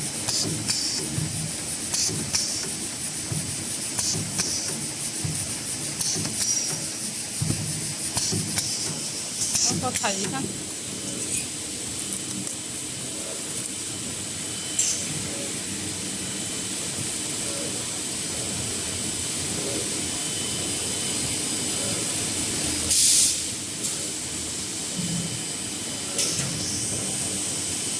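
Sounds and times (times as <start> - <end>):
packing machine hissing: 0.0 - 10.9, 22.5 - 23.6
short sharp hisses: 22.9 - 23.5.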